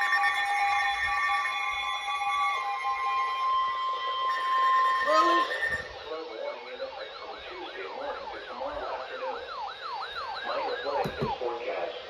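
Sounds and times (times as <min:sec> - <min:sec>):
warbling siren alarm: 0:00.0 - 0:12.0
faint voice: 0:05.0 - 0:09.5.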